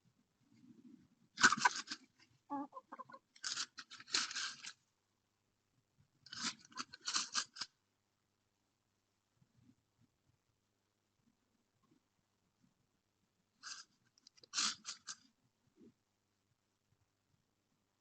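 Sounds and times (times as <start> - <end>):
chicken clucking: 1.4 - 3.4
chickens scratching and pecking: 1.4 - 4.8, 6.3 - 7.7, 13.6 - 15.2.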